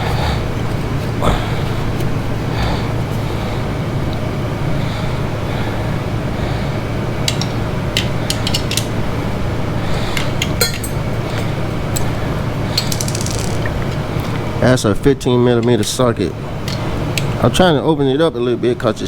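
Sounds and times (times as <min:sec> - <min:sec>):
steady low hum: 0:00.0 - 0:19.0
metal tool clinking: 0:10.2 - 0:12.1.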